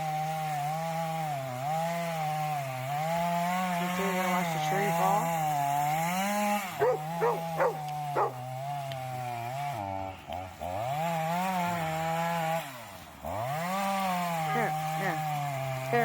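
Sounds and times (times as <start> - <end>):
chainsaw cutting a tree: 0.0 - 16.0
dog barking: 6.8 - 8.4, 14.5 - 15.2.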